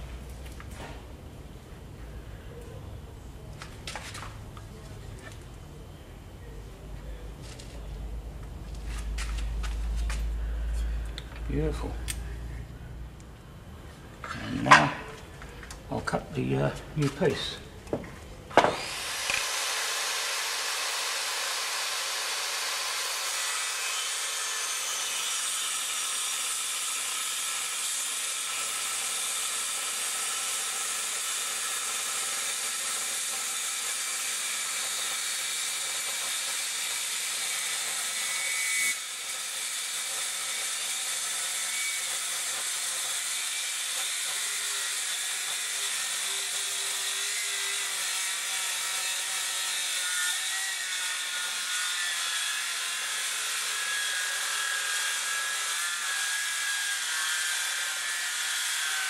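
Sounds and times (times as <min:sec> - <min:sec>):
circular saw cutting wood: 0:18.6 - 0:59.0.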